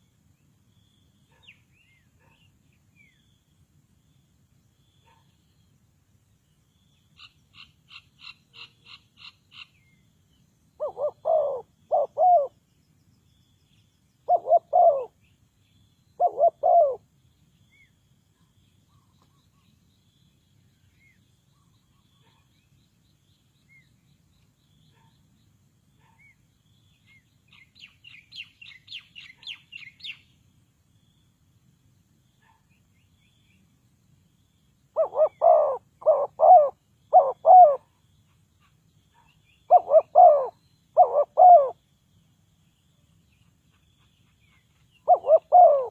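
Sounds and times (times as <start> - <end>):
bird chirps: 0.0 - 5.8, 6.4 - 31.3, 32.2 - 45.9
dove cooing: 10.8 - 12.6, 14.3 - 15.2, 16.2 - 17.1, 35.0 - 37.9, 39.7 - 41.8, 45.0 - 45.9.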